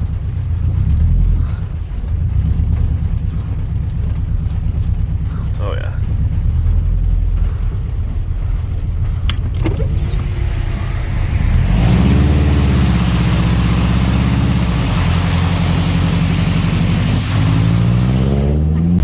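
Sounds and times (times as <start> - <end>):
car engine running: 0.0 - 19.0
broad rushing hiss: 10.5 - 18.7.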